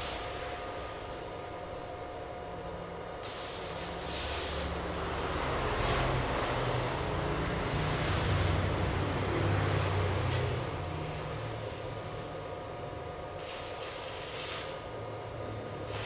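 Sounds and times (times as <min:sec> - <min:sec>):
firework hissing: 0:03.2 - 0:05.3, 0:06.8 - 0:10.7, 0:13.4 - 0:14.8.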